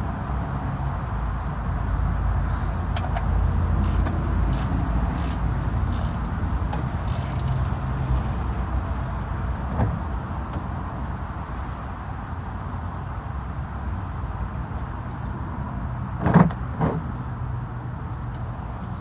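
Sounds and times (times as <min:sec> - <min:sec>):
socket wrench ratcheting: 0:03.8 - 0:06.3, 0:07.1 - 0:07.7.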